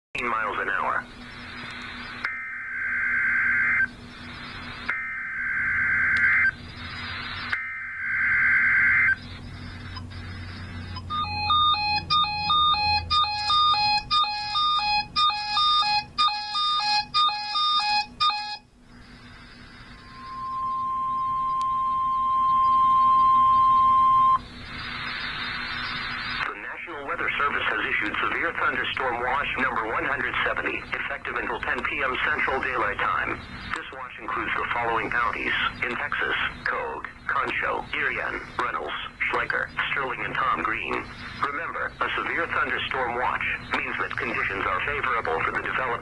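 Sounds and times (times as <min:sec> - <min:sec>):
harsh digital data bursts: 0:00.3 - 0:14.8, 0:23.0 - 0:26.4
electronic beeps at several pitches: 0:00.4 - 0:26.5
steady single-pitch alert tone: 0:01.2 - 0:26.4.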